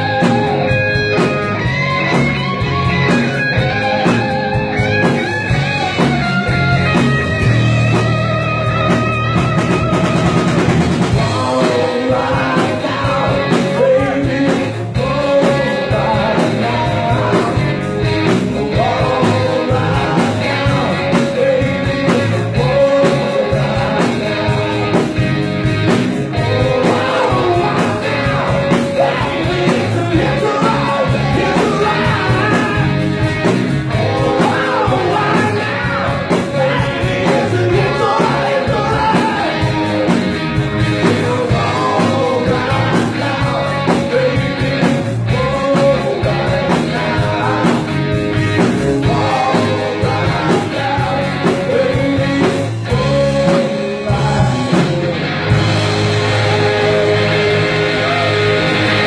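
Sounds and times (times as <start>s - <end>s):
drum kit: 0.0s - 59.0s
electric guitar: 0.0s - 59.0s
person singing: 11.1s - 25.2s, 26.3s - 33.2s, 33.8s - 55.1s, 56.1s - 59.0s.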